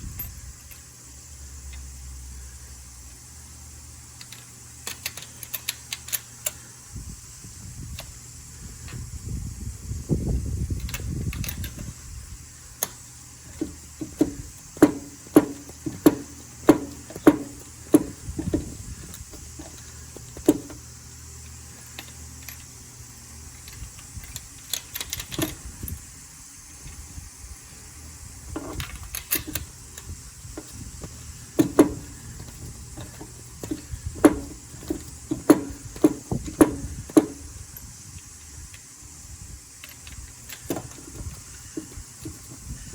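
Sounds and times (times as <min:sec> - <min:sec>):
ratchet tool clicking: 0:04.2 - 0:06.6, 0:28.6 - 0:37.9.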